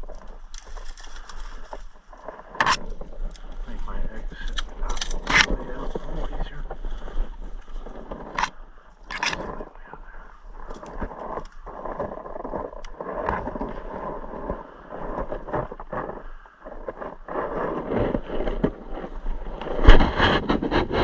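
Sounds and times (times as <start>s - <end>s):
clothing rustling on microphone: 0.0s - 21.0s.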